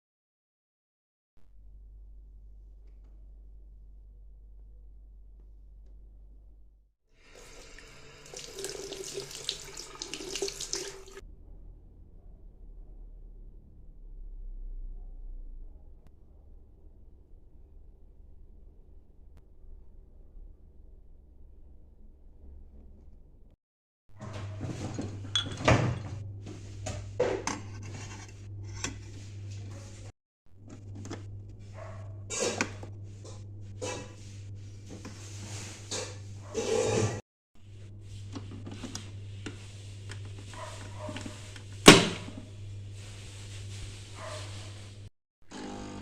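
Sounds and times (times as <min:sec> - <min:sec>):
faint low hum: 0:01.4 - 0:06.8, 0:11.2 - 0:23.5
steady low hum: 0:01.4 - 0:06.8
tap water splashing into basin: 0:08.2 - 0:11.2.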